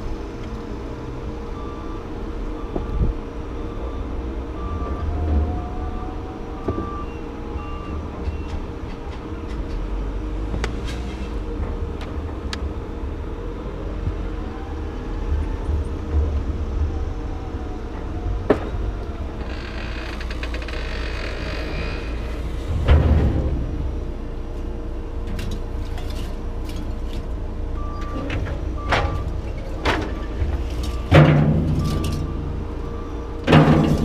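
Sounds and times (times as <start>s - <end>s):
reversing alarm beeping: 0.9s - 9.5s, 27.7s - 34.0s.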